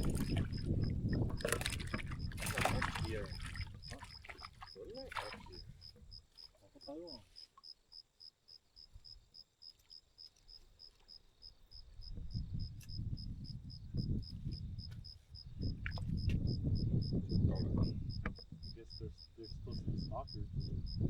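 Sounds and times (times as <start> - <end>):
cricket chirping: 0.0 - 21.0.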